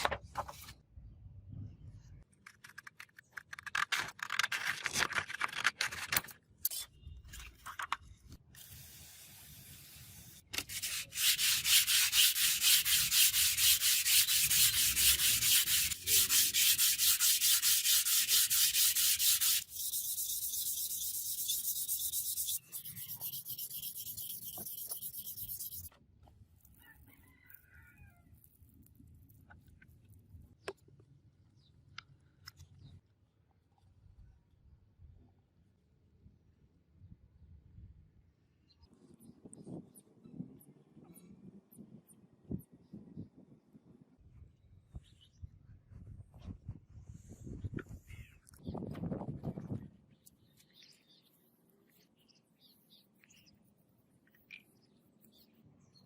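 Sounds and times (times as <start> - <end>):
sanding hiss: 8.6 - 25.9
rasping sanding strokes: 8.9 - 25.9.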